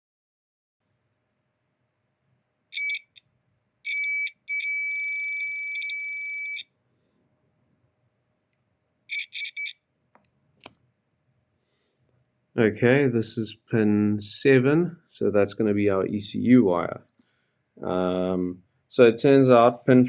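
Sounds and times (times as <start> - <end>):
multimeter beeps: 2.8 - 3.2, 3.8 - 6.7, 9.1 - 9.8.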